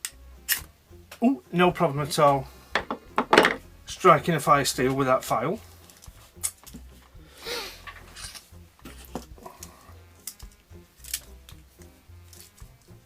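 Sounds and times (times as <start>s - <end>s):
quiet background music: 0.0s - 13.0s
metal tool scrape: 7.6s - 11.4s.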